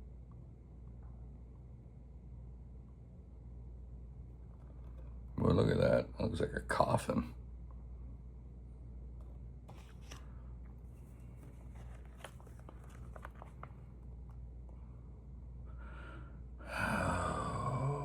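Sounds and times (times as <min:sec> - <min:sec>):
low steady hum: 0:00.0 - 0:18.0
paper rustling and clicks: 0:09.7 - 0:10.3, 0:11.1 - 0:13.9
man sighing loudly: 0:16.6 - 0:18.0.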